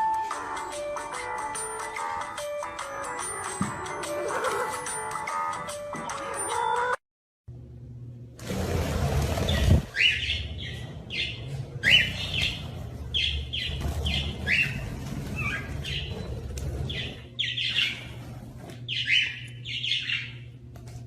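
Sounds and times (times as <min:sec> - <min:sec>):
low hum: 0:07.5 - 0:21.0
bird chirping: 0:09.5 - 0:18.2, 0:18.8 - 0:20.5.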